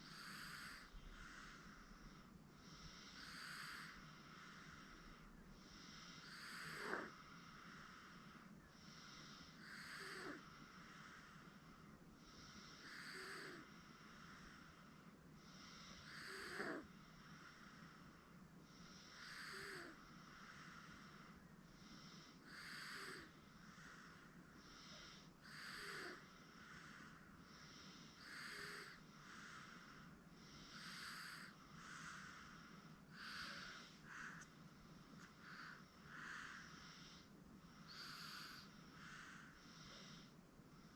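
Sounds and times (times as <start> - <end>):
baby snoring softly: 0.0 - 40.9
steady low hum: 0.0 - 40.9.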